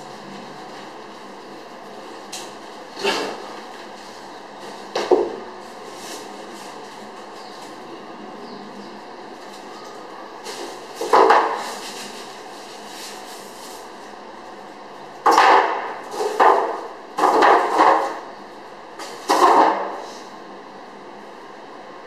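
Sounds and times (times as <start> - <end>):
loud knocks and bangs: 15.3 - 18.2.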